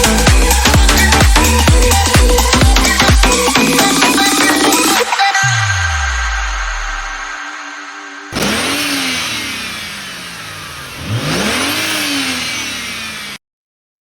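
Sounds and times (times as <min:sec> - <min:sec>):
car engine revving: 0:08.3 - 0:13.4.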